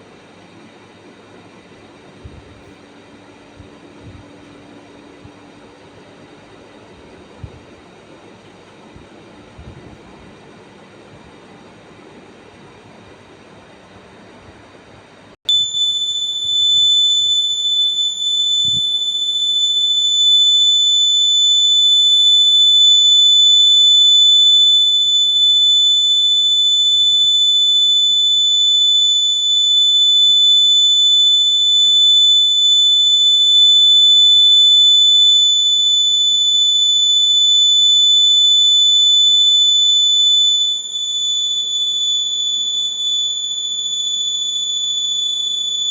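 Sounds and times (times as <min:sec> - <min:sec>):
high-pitched electronic buzzer tone: 0:15.5 - 0:45.9.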